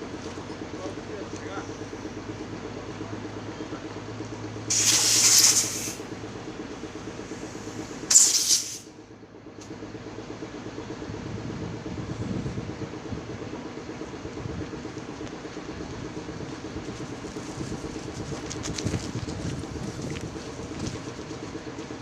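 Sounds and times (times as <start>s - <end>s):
compressed air hissing: 4.7s - 6.1s, 7.3s - 8.9s.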